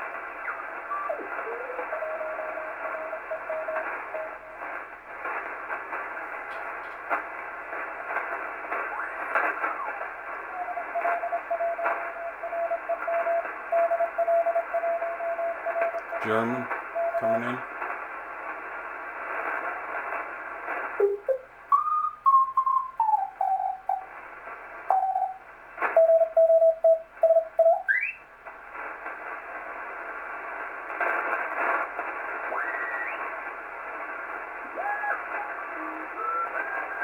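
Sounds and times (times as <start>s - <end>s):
radio receiver band noise hiss: 0.0s - 37.0s
whistling heterodyne tones: 21.1s - 24.0s, 34.7s - 37.0s.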